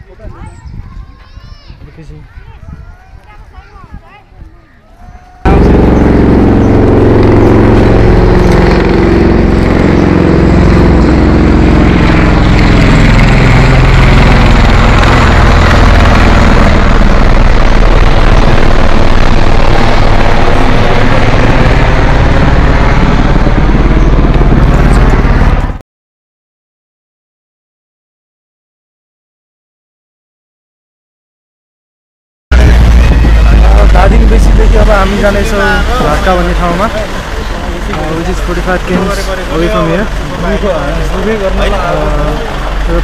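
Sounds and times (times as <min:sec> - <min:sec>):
loud vehicle engine running: 0:05.4 - 0:25.8, 0:32.5 - 0:43.0.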